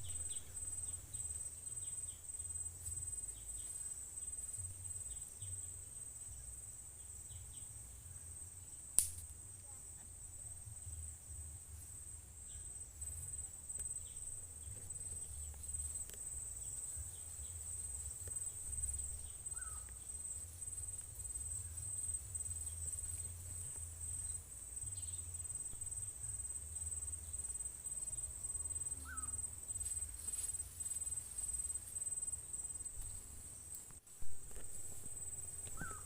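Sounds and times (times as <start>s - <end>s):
bird chirp: 0.0s - 2.4s, 18.5s - 20.2s, 29.0s - 29.4s, 34.7s - 36.0s
crickets trilling: 0.0s - 36.0s.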